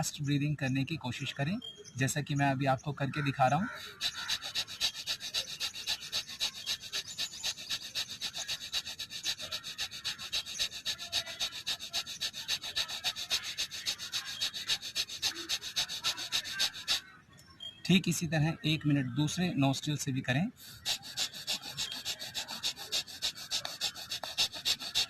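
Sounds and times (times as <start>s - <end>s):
sharp hissing nasal breaths: 3.6s - 17.1s, 20.5s - 25.0s.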